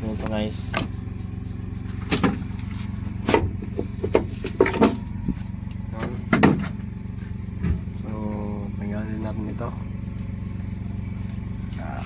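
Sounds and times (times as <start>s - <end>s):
steady low hum: 0.0s - 12.0s
tools knocking and clattering: 3.3s - 5.0s, 6.0s - 6.8s.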